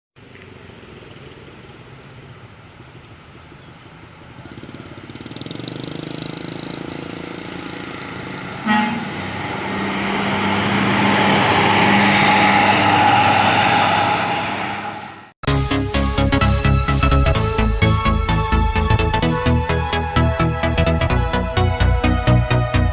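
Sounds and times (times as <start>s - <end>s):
coach engine passing: 4.2s - 15.4s
short horn toot: 8.6s - 9.4s.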